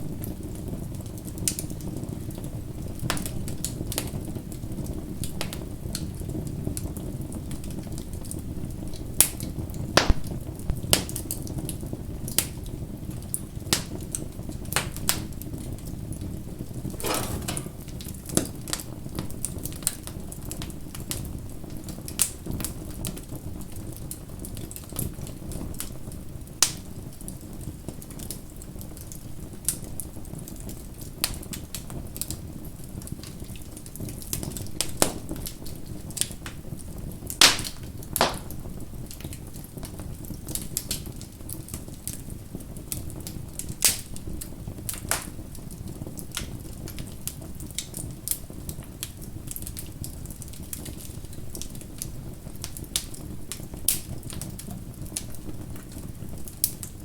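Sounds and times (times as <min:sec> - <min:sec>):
burning wood crackling and popping: 0:40.2 - 0:57.0.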